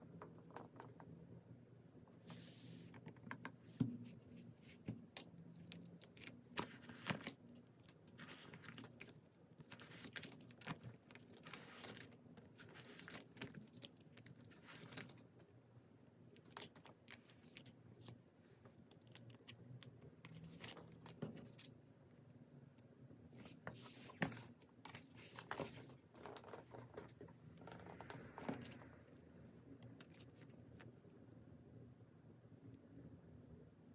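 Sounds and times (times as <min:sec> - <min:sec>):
packing materials crinkling: 0:05.5 - 0:15.4.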